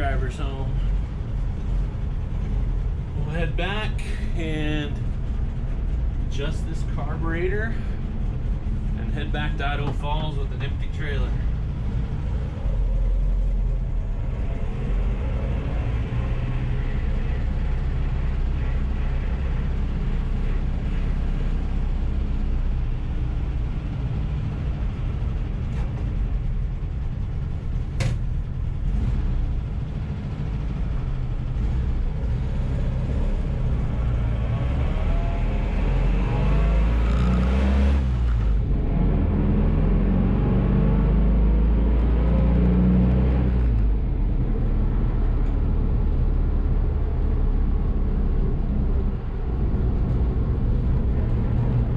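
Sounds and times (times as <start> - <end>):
vehicle engine and road noise: 0.0 - 51.9.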